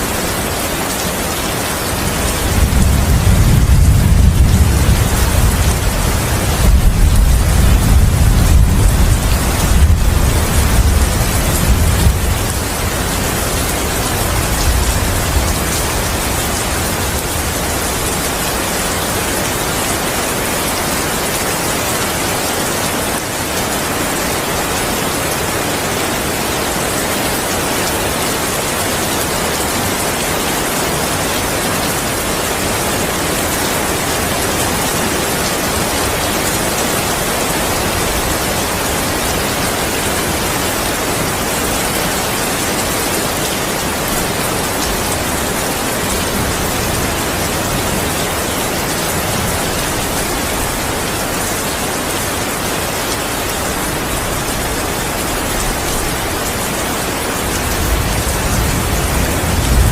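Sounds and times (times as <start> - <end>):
heavy rain falling: 0.0 - 59.9
thunder rumble: 2.2 - 18.2, 57.6 - 59.9.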